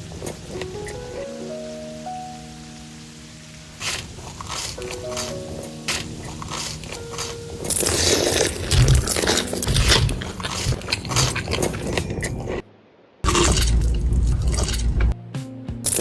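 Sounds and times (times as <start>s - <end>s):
crunchy food being chewed: 3.8s - 12.6s, 13.3s - 15.0s.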